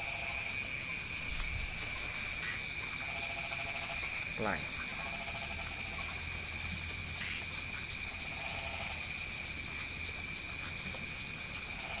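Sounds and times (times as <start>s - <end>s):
insects buzzing: 0.0s - 12.0s
pulsing insect trill: 0.0s - 12.0s.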